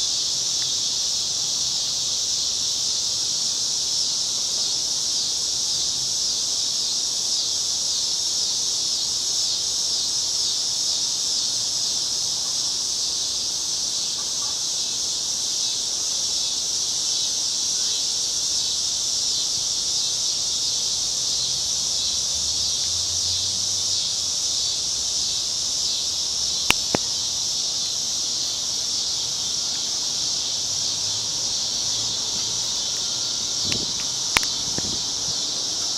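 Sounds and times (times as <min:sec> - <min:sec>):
cicadas buzzing: 0:00.0 - 0:35.9
sharp clicks: 0:26.7 - 0:27.1, 0:33.7 - 0:35.0.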